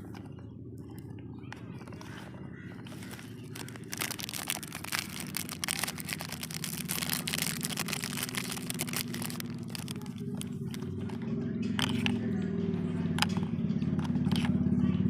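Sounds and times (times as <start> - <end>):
plastic clicking and rattling: 2.8 - 11.2, 11.8 - 12.2, 13.2 - 14.6
toy motor humming: 2.9 - 11.2.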